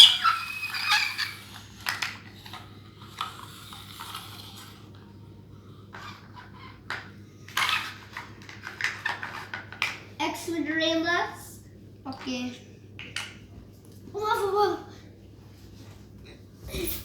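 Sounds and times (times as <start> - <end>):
faint hum: 0.0 - 17.0
small hard objects clattering: 7.5 - 10.0.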